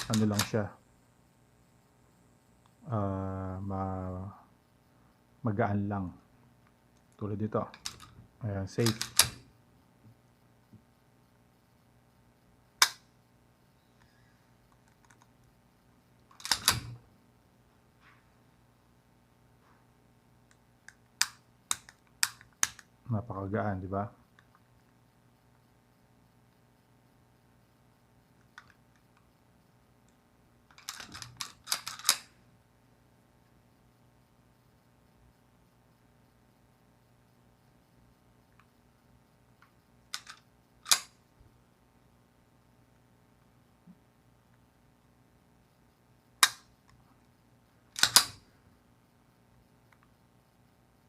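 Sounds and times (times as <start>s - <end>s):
pistol action metallic clicks: 8.8s - 9.4s, 12.8s - 13.0s, 16.4s - 17.0s, 30.8s - 32.3s, 40.1s - 41.2s, 46.4s - 46.7s, 48.0s - 48.4s.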